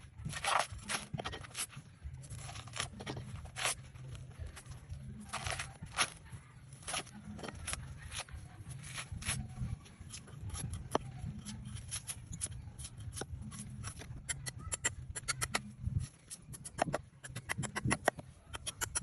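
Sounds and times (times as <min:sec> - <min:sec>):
knife cutting coconut husk: 0:00.3 - 0:14.1.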